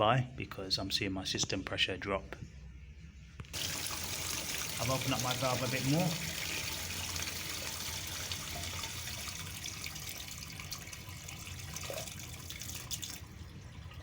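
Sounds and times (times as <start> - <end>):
water rushing out of drain valve: 3.6 - 14.0.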